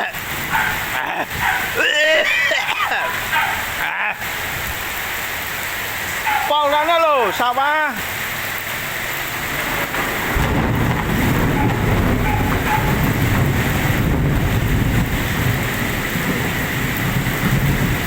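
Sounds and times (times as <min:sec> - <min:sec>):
heavy rain falling: 0:00.0 - 0:18.0
deep low thunder rumble: 0:08.8 - 0:18.0.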